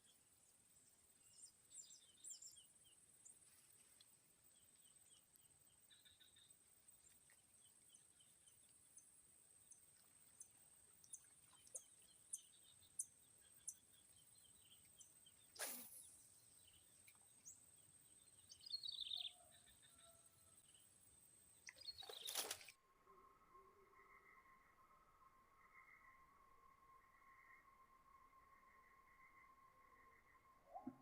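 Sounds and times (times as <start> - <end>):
brief swishes: 15.6 - 16.1.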